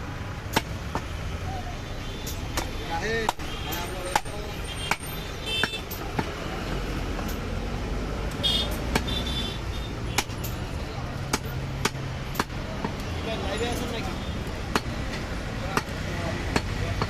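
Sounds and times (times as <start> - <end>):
traffic: 0.0 - 17.0
cleaver chopping meat and bone: 0.5 - 1.1, 2.5 - 6.4, 8.3 - 9.3, 10.0 - 13.1, 14.5 - 17.0.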